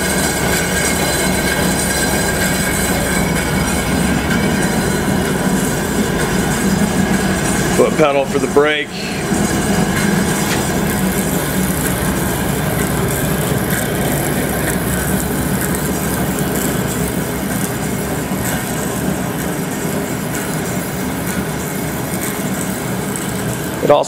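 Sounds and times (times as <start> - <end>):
band saw running: 0.0 - 24.0.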